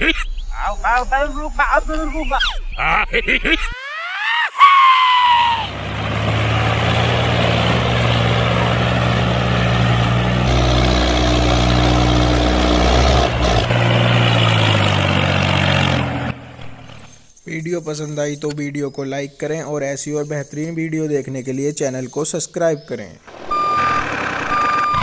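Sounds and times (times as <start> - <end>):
small vehicle engine drone: 5.2 - 17.2, 23.3 - 25.0.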